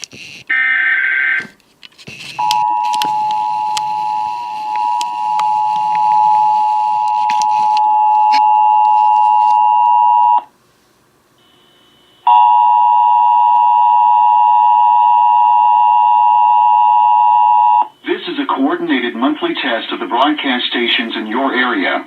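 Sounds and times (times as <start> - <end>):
two-tone alert alarm: 2.4 - 10.5, 11.4 - 19.3.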